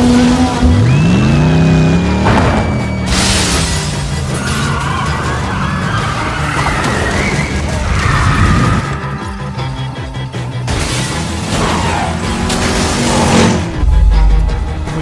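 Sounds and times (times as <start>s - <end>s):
film music score: 0.0s - 15.0s
rumbling and crashing of destruction: 2.2s - 8.9s, 10.7s - 15.0s
loud crash: 13.7s - 15.0s.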